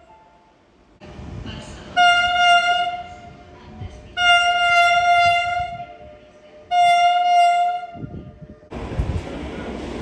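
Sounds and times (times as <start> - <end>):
train horn blasts: 2.0 - 3.3, 4.2 - 6.0, 6.7 - 8.2.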